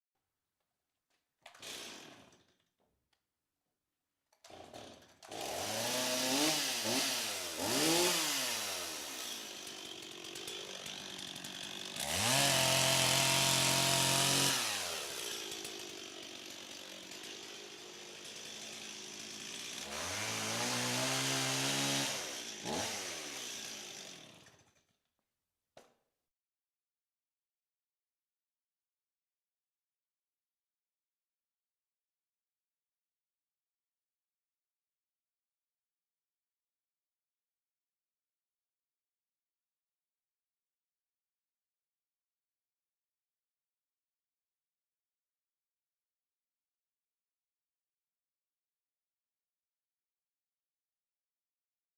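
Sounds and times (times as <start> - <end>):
chainsaw engine revving: 1.5 - 2.5, 4.4 - 24.8.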